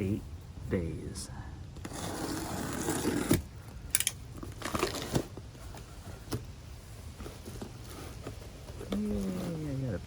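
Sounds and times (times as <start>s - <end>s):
packaging rustling and crinkling: 4.3s - 6.4s.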